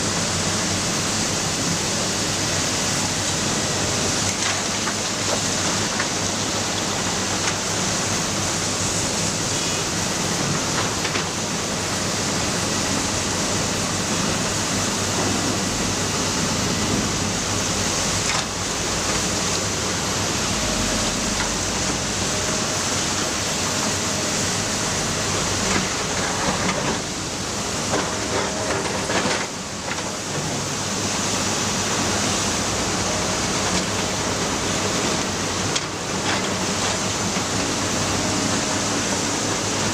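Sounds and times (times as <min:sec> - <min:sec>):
diesel engine running: 0:10.2 - 0:29.2
dense rushing noise: 0:16.6 - 0:26.8.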